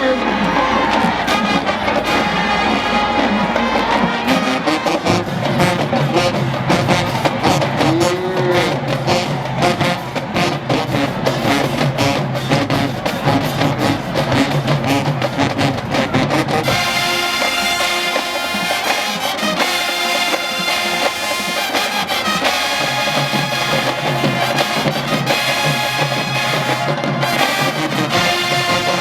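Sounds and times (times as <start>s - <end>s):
brass held chords: 0.0s - 29.0s
marching band playing: 0.0s - 29.0s
drums and bass pounding: 0.4s - 18.6s.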